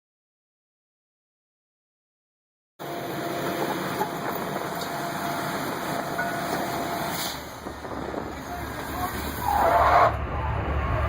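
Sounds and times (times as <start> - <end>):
drilling rig machinery running: 2.8 - 11.0.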